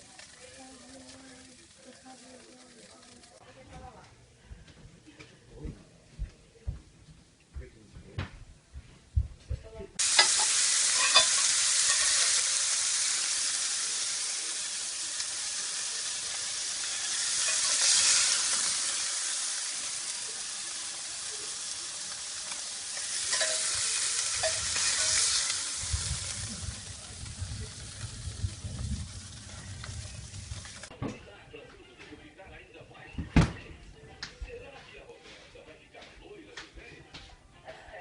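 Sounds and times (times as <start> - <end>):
burger patty sizzling: 0.0 - 3.4, 10.0 - 30.9.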